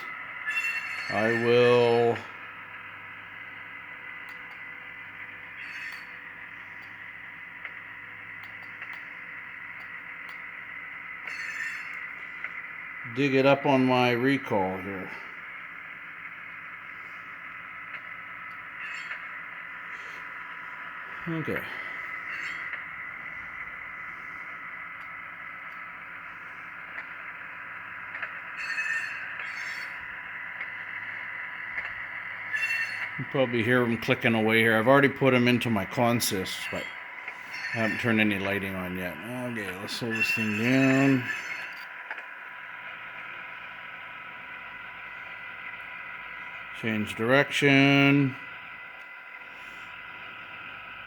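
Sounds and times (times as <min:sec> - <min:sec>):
low hum: 0:00.0 - 0:51.0
model train rolling hiss: 0:00.0 - 0:51.0
faint rail-joint clicks: 0:04.2 - 0:10.5, 0:24.8 - 0:25.9, 0:26.8 - 0:43.5
clicks: 0:08.4 - 0:09.2, 0:09.8 - 0:10.5, 0:28.1 - 0:28.4.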